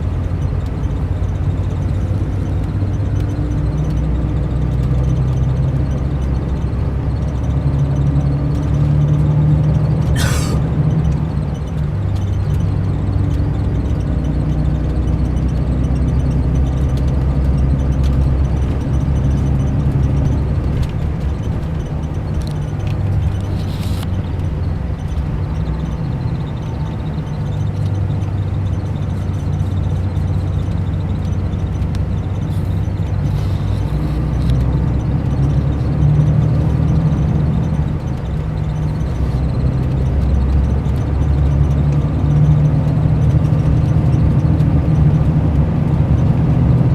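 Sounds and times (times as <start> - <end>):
diesel engine droning: 0.0 - 46.9.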